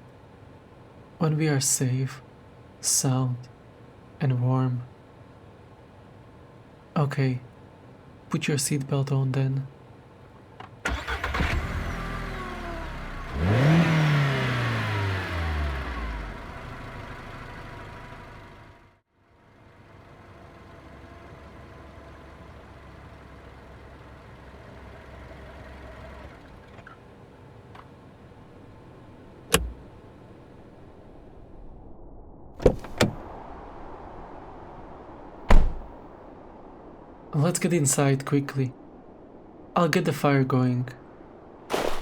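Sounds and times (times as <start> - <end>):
car driving rumble: 0.0 - 31.5, 32.6 - 33.5, 35.4 - 42.0
car engine starting and revving: 10.1 - 18.9, 19.5 - 31.2
sharp click: 29.5 - 29.9.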